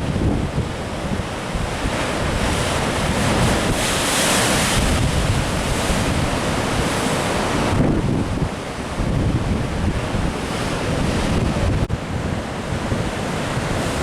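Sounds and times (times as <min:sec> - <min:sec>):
wave breaking: 0:00.0 - 0:08.4
ocean surf washing in: 0:00.0 - 0:14.0
wind buffeting microphone: 0:00.0 - 0:14.0.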